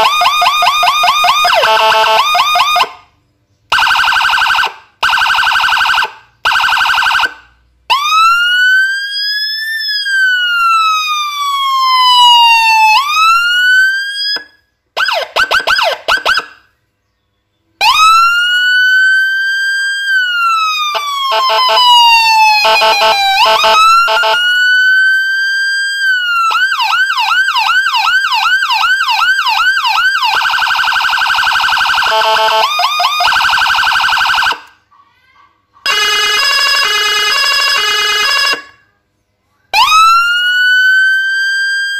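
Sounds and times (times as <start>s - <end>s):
electronic siren cycling tones: 0.0s - 3.0s, 17.8s - 34.7s.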